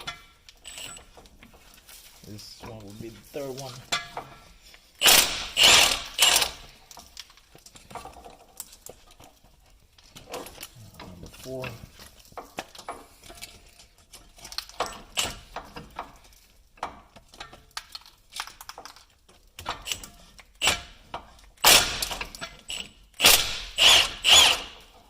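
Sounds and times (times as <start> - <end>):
impact wrench bursts: 0.6 - 1.1, 5.0 - 6.8, 14.9 - 15.5, 20.6 - 25.0.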